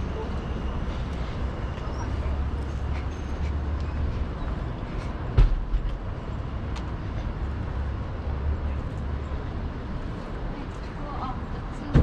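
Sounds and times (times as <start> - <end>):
vehicle low rumble: 0.0 - 12.0
sharp thump: 5.4 - 5.9.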